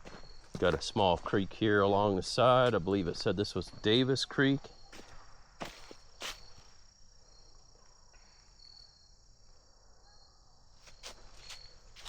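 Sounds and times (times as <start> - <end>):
crickets trilling: 0.0 - 12.0
soft footsteps: 4.9 - 6.7, 10.8 - 12.0.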